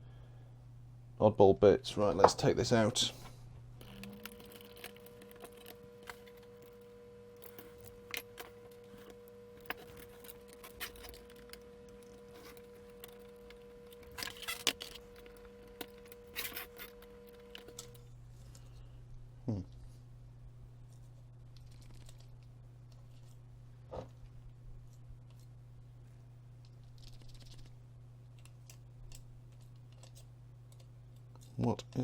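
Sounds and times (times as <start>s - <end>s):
faint steady hum: 0.0s - 32.0s
plastic parts clicking and scraping: 3.8s - 18.7s, 28.3s - 32.0s.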